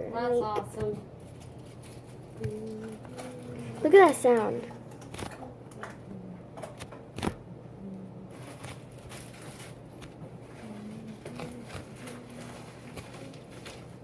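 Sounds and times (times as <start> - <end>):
foam toy crackling and scraping: 8.4 - 14.0.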